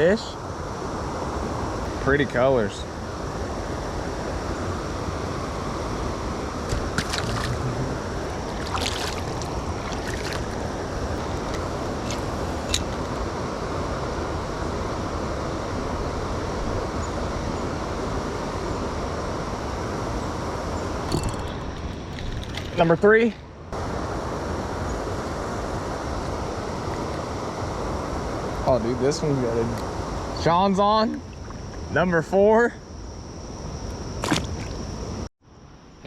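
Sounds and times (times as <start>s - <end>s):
river water rushing: 0.8s - 23.0s.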